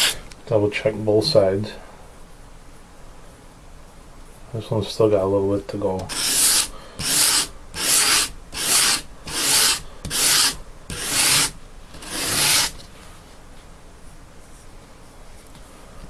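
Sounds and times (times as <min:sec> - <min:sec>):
knife rasping on sandpaper: 0:06.0 - 0:12.8.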